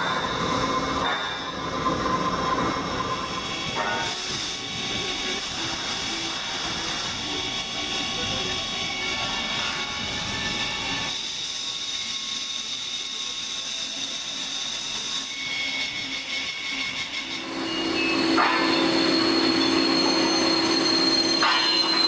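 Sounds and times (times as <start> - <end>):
industrial machinery hissing: 0.0 - 22.0
squealing tones: 14.4 - 22.0.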